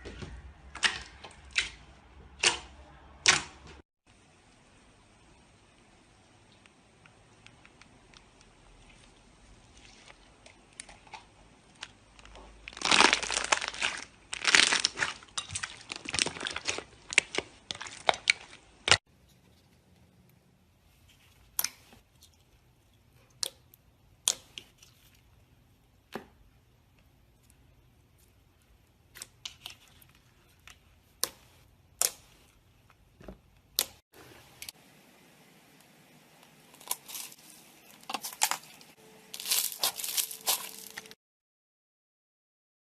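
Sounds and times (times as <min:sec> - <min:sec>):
slime crackling when squeezed: 0:12.2 - 0:18.5, 0:38.1 - 0:41.1.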